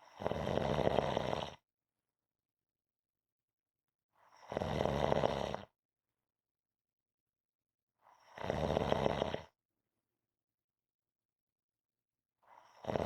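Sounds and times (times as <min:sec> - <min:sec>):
person snoring: 0:00.0 - 0:01.6, 0:04.3 - 0:05.7, 0:08.2 - 0:09.5, 0:12.7 - 0:13.0.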